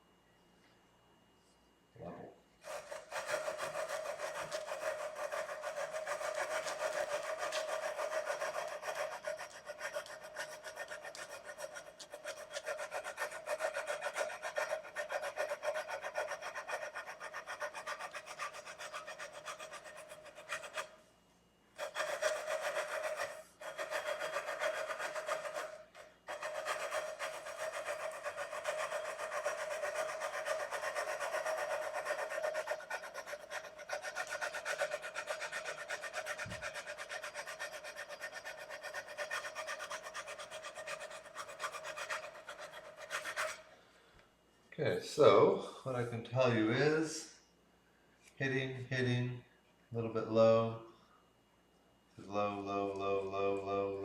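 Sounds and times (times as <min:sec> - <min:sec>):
sandpaper scratching on metal frets: 0:02.6 - 0:20.9, 0:21.8 - 0:43.7.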